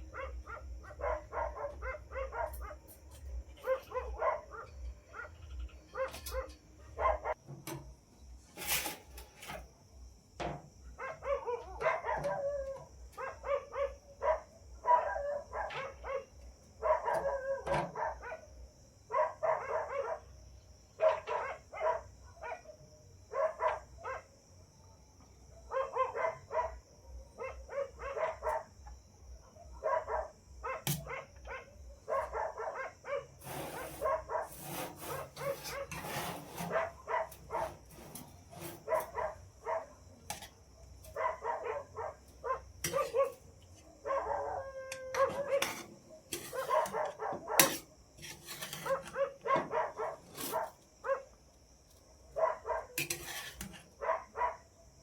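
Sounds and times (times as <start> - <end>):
dog barking: 0.0 - 2.9, 3.6 - 7.4, 10.9 - 18.5, 19.1 - 20.4, 21.0 - 40.1, 40.8 - 47.9, 48.5 - 51.4, 52.2 - 54.9.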